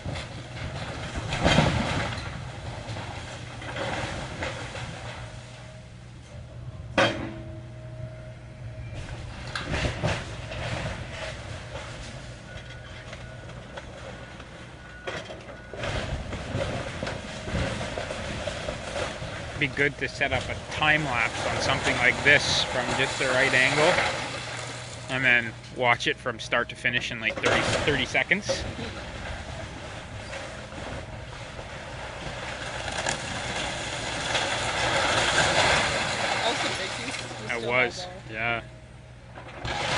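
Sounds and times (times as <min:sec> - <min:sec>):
debris cracking and clattering: 0:00.0 - 0:05.4, 0:09.4 - 0:25.2, 0:27.3 - 0:37.5, 0:39.3 - 0:39.9
excavator diesel engine: 0:07.8 - 0:34.1
wood crunching: 0:30.3 - 0:37.4.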